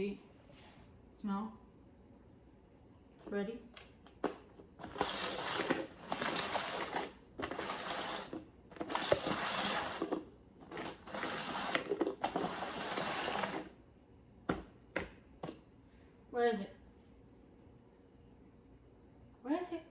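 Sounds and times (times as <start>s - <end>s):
cups scraping across floor: 4.2s - 13.8s.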